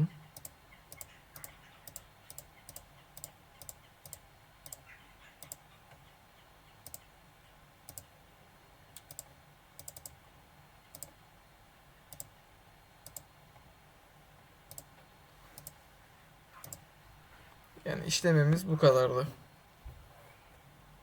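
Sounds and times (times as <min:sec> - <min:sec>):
computer mouse clicks: 0:00.3 - 0:04.8, 0:05.4 - 0:05.6, 0:06.8 - 0:07.1, 0:07.9 - 0:08.1, 0:09.0 - 0:10.2, 0:10.9 - 0:11.2, 0:12.1 - 0:12.3, 0:13.0 - 0:13.3, 0:14.7 - 0:15.0, 0:15.6 - 0:15.8, 0:16.6 - 0:16.8.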